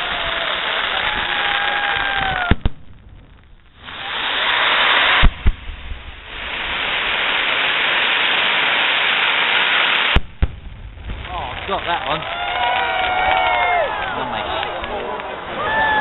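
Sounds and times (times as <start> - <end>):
firework hiss: 0.0 - 12.3
firework bangs: 0.0 - 16.0.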